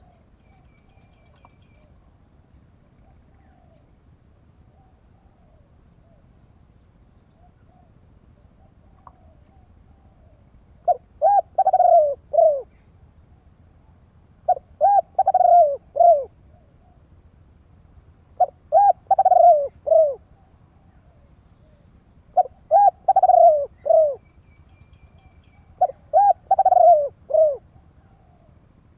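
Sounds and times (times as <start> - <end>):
dove cooing: 3.0 - 4.0, 8.6 - 13.6, 14.4 - 17.1, 18.4 - 28.7.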